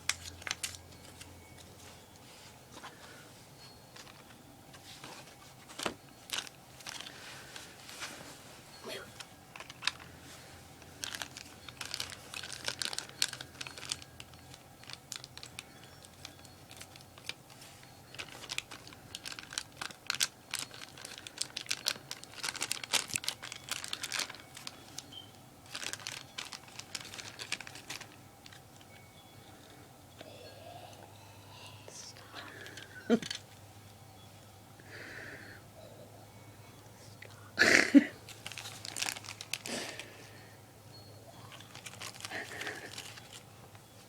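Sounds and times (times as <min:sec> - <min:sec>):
packaging crinkling and rustling: 0:00.0 - 0:02.1, 0:03.6 - 0:08.4, 0:09.2 - 0:29.1, 0:32.6 - 0:33.6, 0:38.2 - 0:40.2, 0:41.4 - 0:44.0.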